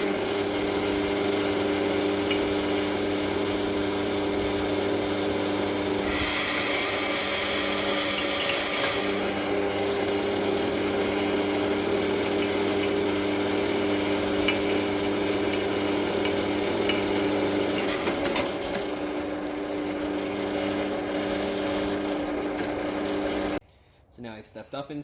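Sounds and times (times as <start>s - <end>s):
electric drill drilling into steel: 0.0s - 23.6s.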